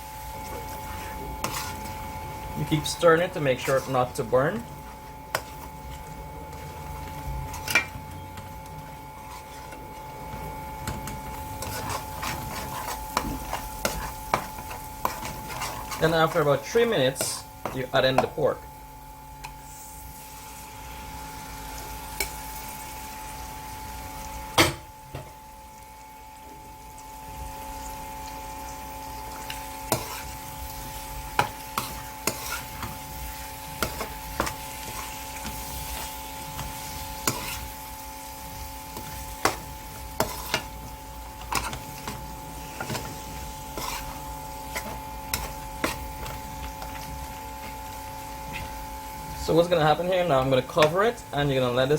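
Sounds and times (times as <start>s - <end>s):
food sizzling in hot oil: 0.0s - 51.9s
spoon scraping a pot: 0.6s - 4.6s, 5.3s - 6.8s, 9.2s - 18.3s, 29.4s - 30.6s, 31.3s - 37.9s, 38.9s - 47.0s.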